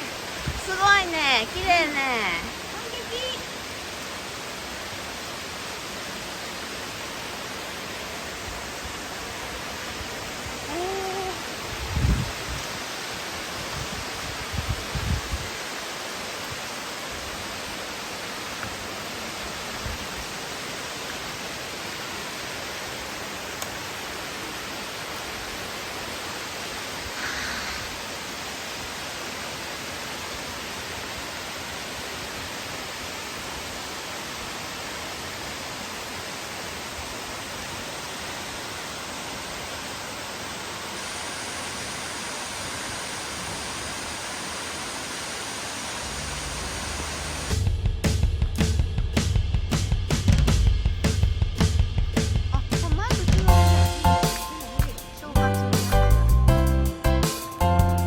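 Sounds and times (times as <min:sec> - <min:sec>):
waterfall rushing: 0:00.0 - 0:47.6, 0:52.6 - 0:56.4
low thumps: 0:47.5 - 0:57.2.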